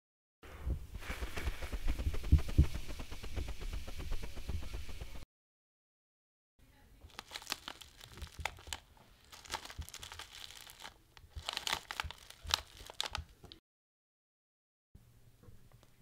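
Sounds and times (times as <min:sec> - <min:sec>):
material crumpling crackles: 0:07.1 - 0:13.6.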